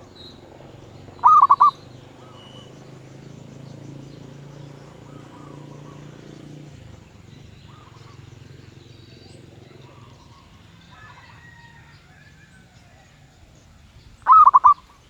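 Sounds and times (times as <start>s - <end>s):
low motor hum: 0.0s - 11.0s
faint bird calls: 0.0s - 15.0s.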